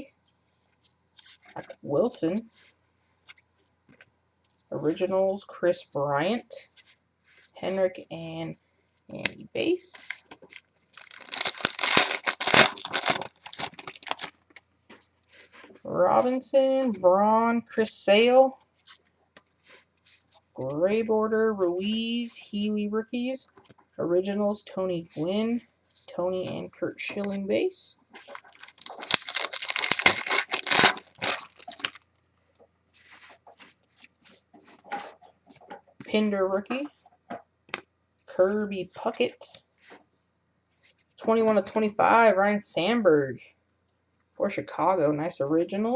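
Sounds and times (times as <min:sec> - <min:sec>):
cards clicking and rustling: 0:10.0 - 0:14.7, 0:28.2 - 0:32.0
cards being handled: 0:28.2 - 0:32.0.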